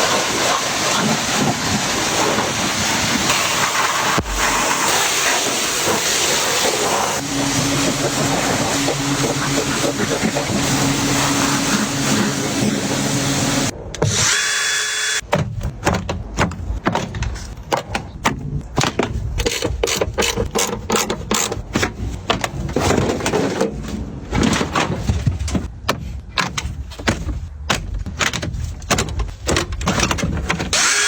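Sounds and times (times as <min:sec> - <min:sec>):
power tool hissing hum: 0:07.2 - 0:15.2.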